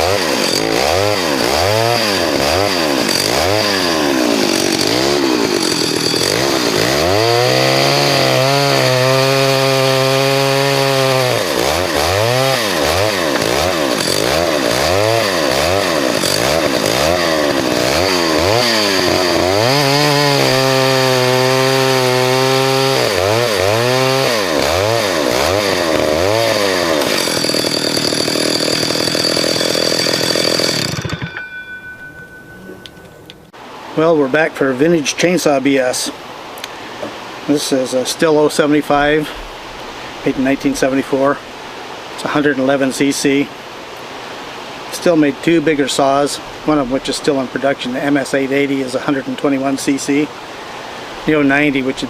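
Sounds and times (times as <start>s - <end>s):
chainsaw revving: 0.0s - 31.3s.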